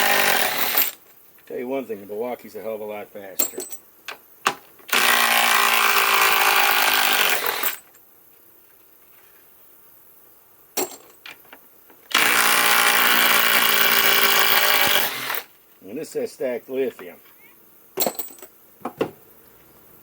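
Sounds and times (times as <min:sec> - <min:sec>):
impact driver hammering: 0:12.2 - 0:15.4.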